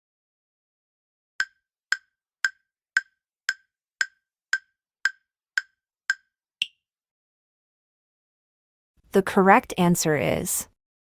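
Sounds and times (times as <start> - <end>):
woodblock-like timer ticks: 1.4 - 6.8.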